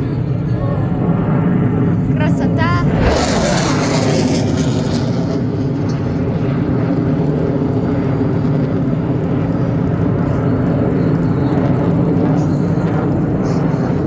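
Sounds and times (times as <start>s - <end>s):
aircraft engine rumble: 2.8s - 14.0s.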